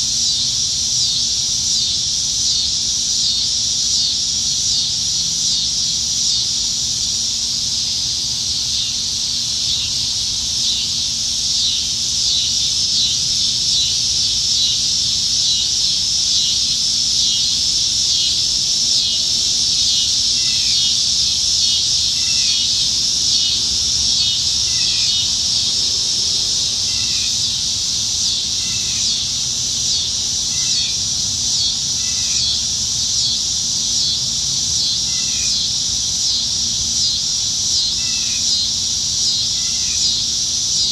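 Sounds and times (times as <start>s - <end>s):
cicadas buzzing: 0.0s - 40.9s.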